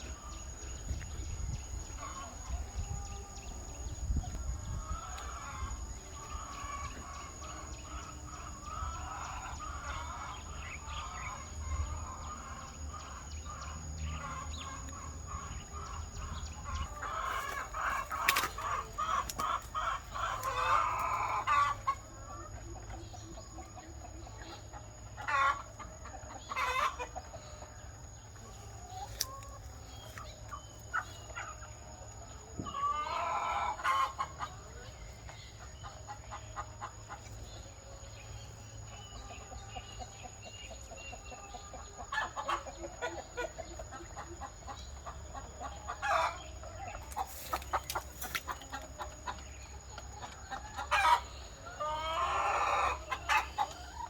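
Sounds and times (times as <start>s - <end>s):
chickens clucking: 0.0s - 54.0s
roosters crowing: 4.6s - 22.6s, 45.6s - 49.6s, 50.4s - 54.0s.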